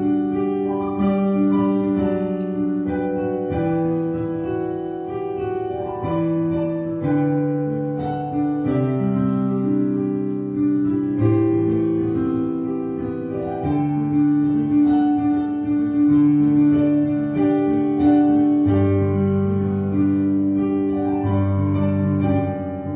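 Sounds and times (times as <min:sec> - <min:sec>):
slow piano music: 0:00.0 - 0:22.9.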